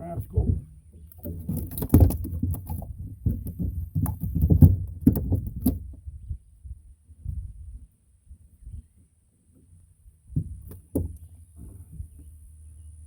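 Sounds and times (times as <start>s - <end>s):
knocks and clatters in boat: 0.0s - 6.0s, 10.3s - 12.4s.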